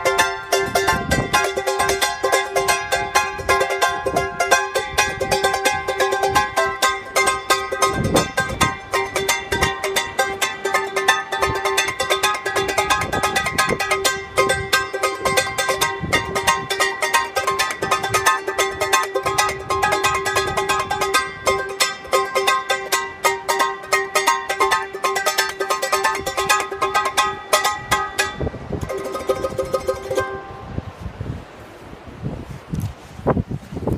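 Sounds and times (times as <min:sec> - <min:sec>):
ukulele strummed rapidly: 0:00.0 - 0:30.7
faint rustle: 0:30.0 - 0:33.9.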